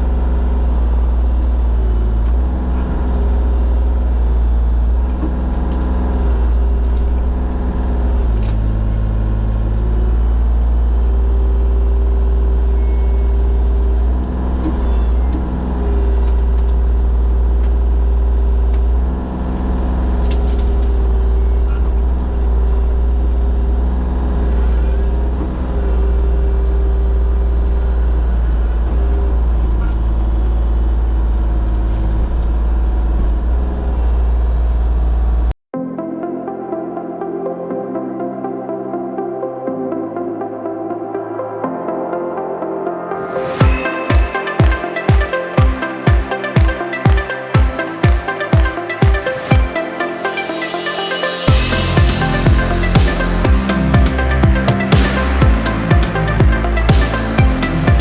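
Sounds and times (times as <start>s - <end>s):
mulcher whine shifting in pitch: 41.6s - 58.0s
forestry mulcher drone: 49.4s - 58.0s.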